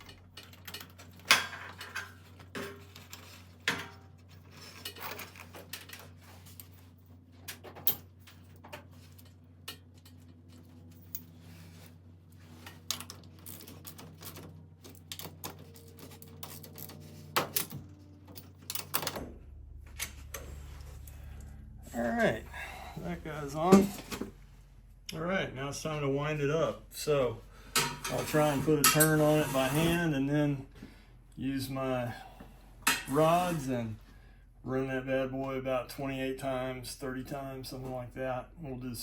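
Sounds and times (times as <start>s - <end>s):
metallic clinks and knocks of wrenches: 0.0s - 11.4s, 27.7s - 29.3s.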